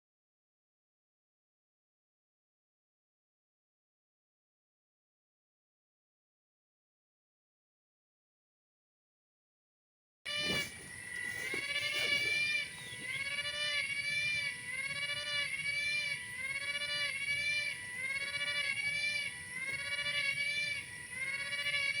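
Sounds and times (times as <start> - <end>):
animal wailing cry: 10.3 - 22.0.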